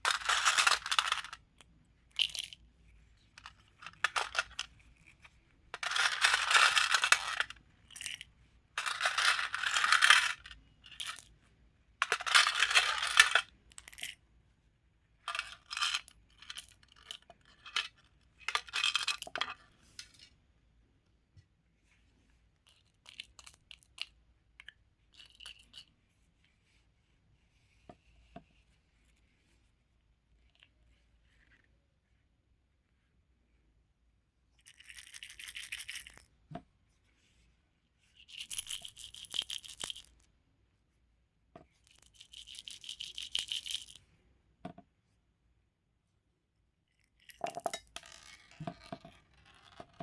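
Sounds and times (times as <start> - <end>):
beads clattering: 0.0 - 1.4, 3.4 - 11.2, 12.0 - 14.2.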